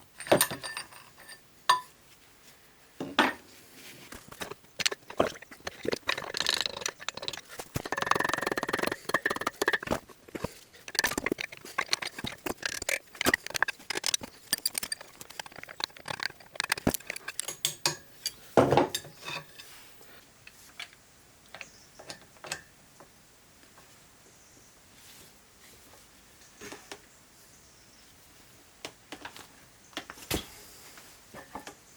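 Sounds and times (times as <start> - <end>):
metal tools clinking and rattling: 0.1 - 1.9, 4.2 - 19.8.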